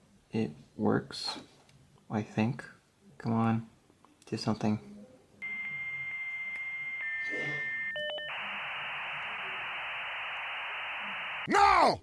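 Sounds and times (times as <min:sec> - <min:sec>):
modem answer tone: 0:05.4 - 0:10.0
lower modem tone: 0:05.4 - 0:11.5
hiss of data noise: 0:08.3 - 0:11.5.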